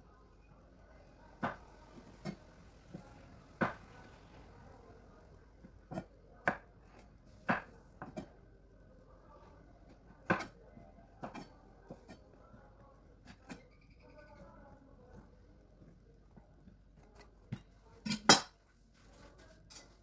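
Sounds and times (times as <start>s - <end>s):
knife chopping on cutting board: 5.9s - 6.7s, 7.4s - 8.3s, 10.2s - 10.6s, 11.2s - 12.2s.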